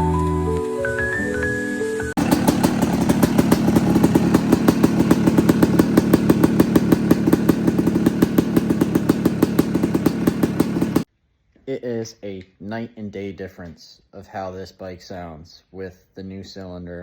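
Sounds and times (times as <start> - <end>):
music: 0.0 - 2.2
dirt bike engine running: 2.2 - 11.1.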